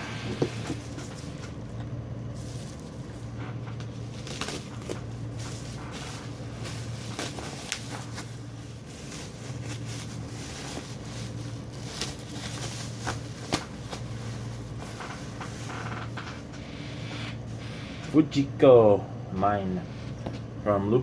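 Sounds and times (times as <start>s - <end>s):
steady low hum: 0.0s - 21.0s
packing paper rustling and crinkling: 0.2s - 16.5s.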